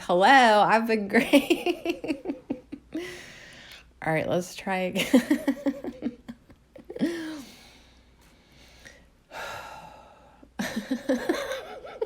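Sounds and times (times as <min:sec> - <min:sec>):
woman laughing raspily: 0:01.2 - 0:03.2, 0:05.0 - 0:07.4, 0:10.6 - 0:12.0.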